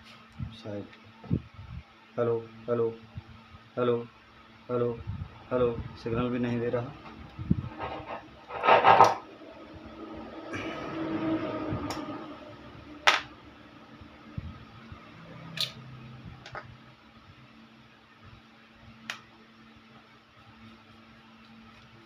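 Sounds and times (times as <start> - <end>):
faint steady hum: 0.0 - 22.0.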